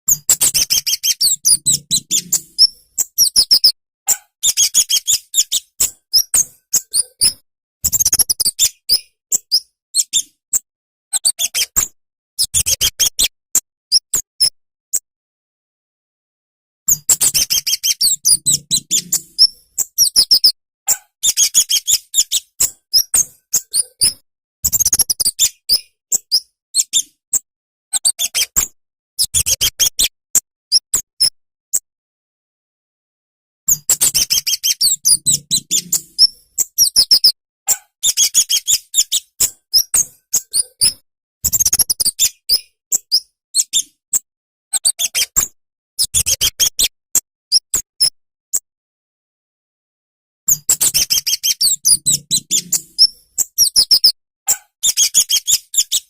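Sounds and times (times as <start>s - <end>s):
bird singing high thin chirps: 0.1s - 3.8s, 4.4s - 10.3s, 16.9s - 20.5s, 21.2s - 24.2s, 33.7s - 37.4s, 38.0s - 43.9s, 50.5s - 54.1s, 54.8s - 56.0s.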